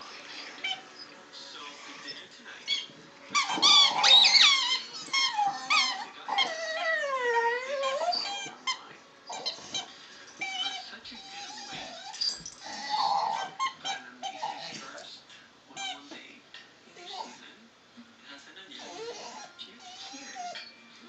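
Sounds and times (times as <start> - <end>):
dog whining and yowling: 0.2 - 1.2, 1.8 - 14.8, 18.8 - 20.8.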